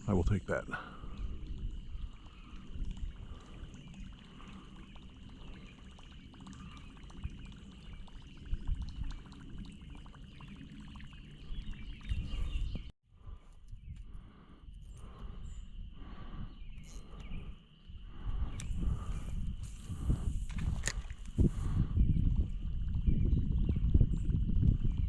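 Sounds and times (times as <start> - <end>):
water splashing: 0.8 - 12.4.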